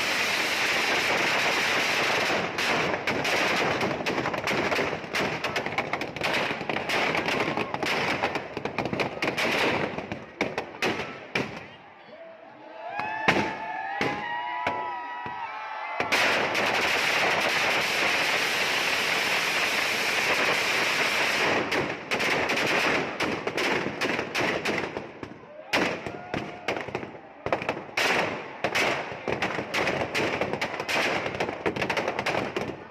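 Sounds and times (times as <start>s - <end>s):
firecrackers crackling and banging: 0.0s - 11.8s, 16.0s - 32.9s
people shouting: 10.9s - 16.3s, 25.4s - 27.6s.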